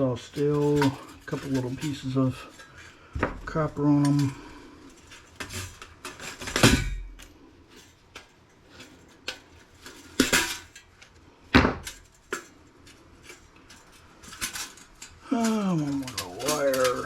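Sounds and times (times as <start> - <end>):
small metal parts clinking: 0.0 - 3.0, 3.6 - 11.2, 11.8 - 17.0.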